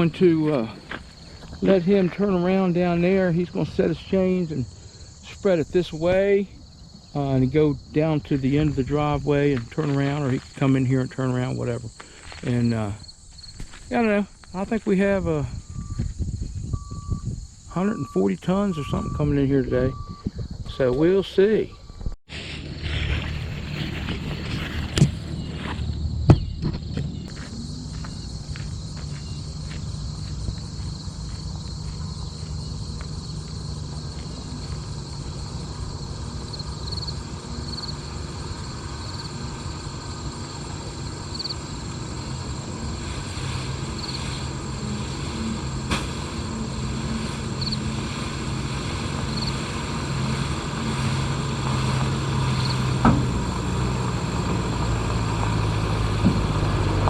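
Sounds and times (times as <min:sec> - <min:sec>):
dump truck engine running: 0:22.3 - 0:57.0.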